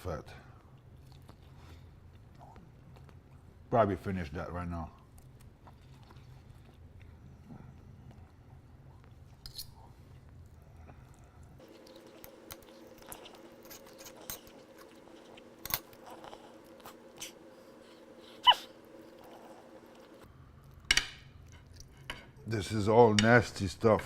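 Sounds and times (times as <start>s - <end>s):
steady hum: 6.8s - 22.5s.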